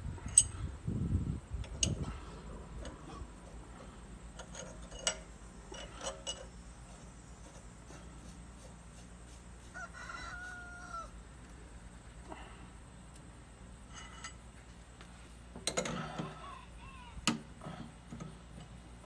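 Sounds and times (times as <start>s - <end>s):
steady low hum: 0.0s - 19.0s
rooster crowing: 9.6s - 11.2s.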